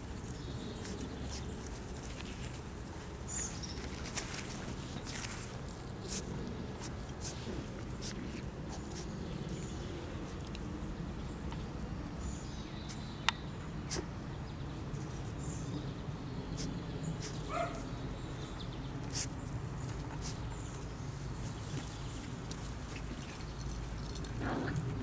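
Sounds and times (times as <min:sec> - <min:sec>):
puppies clicking and rustling: 0:00.0 - 0:10.7, 0:19.0 - 0:25.0.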